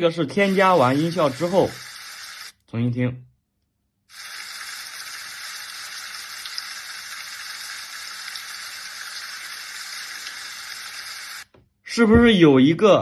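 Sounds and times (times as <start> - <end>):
steady hissing: 0.4 - 2.6, 4.1 - 11.5.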